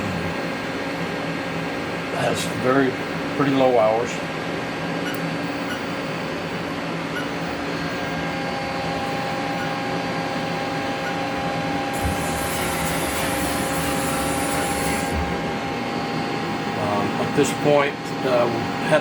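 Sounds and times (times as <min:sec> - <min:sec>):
high machine whine: 0:00.0 - 0:19.0
lathe machine hum: 0:06.7 - 0:16.8.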